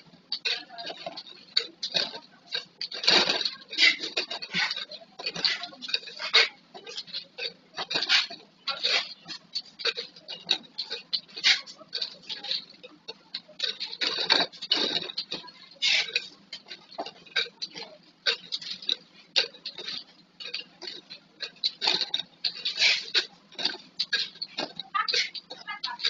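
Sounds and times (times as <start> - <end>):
plastic bottles clicking together: 0.0 - 26.0.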